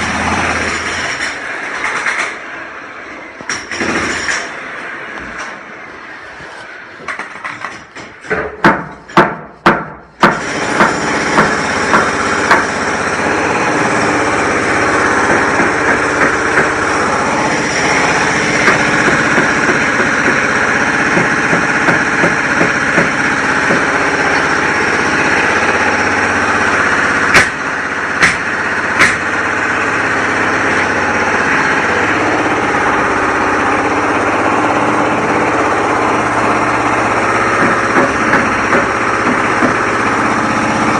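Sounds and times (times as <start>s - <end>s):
knocks and clanks: 7.0s - 12.8s, 15.2s - 16.9s, 17.6s - 25.8s, 28.2s - 29.4s, 37.4s - 40.1s
machine engine running: 10.4s - 40.9s.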